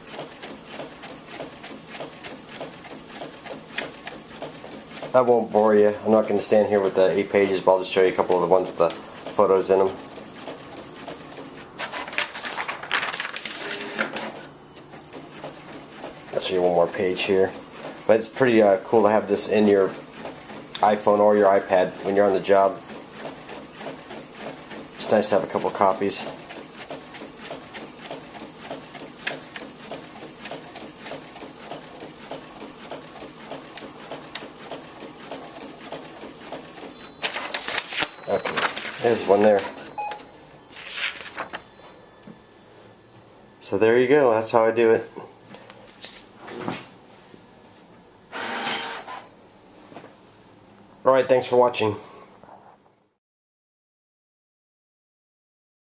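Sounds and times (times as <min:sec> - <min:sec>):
printer clicking and rattling: 0:00.0 - 0:39.9.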